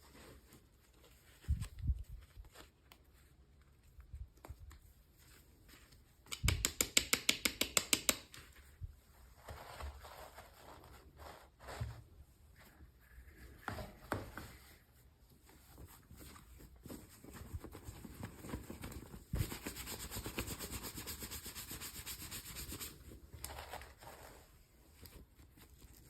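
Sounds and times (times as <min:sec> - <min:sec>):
scratchy rubbing strokes: 0:19.4 - 0:23.1.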